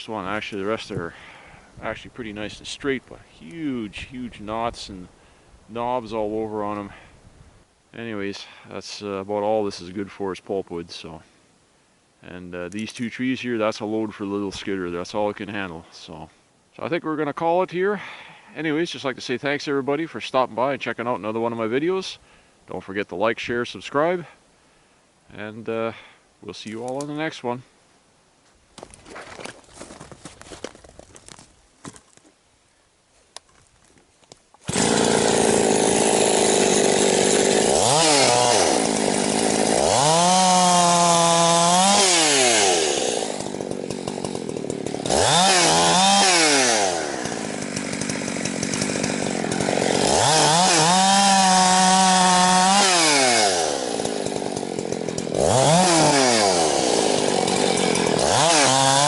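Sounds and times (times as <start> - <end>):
chainsaw revving: 34.6 - 59.0.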